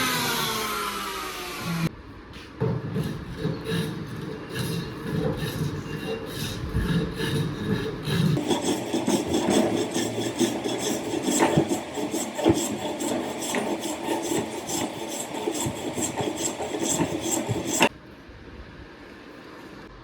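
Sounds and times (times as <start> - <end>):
rasping strokes on wood: 2.6 - 17.9.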